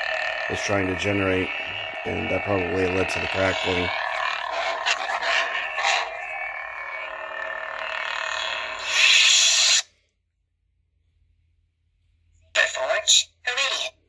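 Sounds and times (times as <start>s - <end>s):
lightsaber blade hum: 0.0s - 9.9s.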